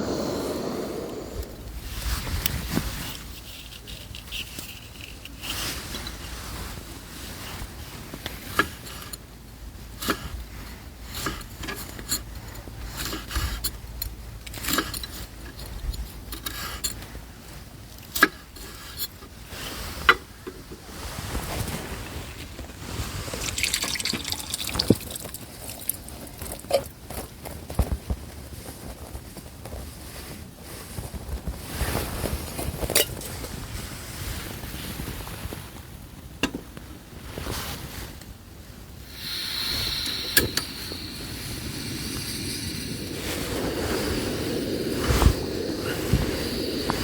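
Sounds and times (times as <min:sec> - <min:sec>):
steady hiss: 0:00.0 - 0:07.6, 0:22.3 - 0:26.9, 0:38.6 - 0:47.0
liquid pouring and trickling: 0:22.8 - 0:26.9.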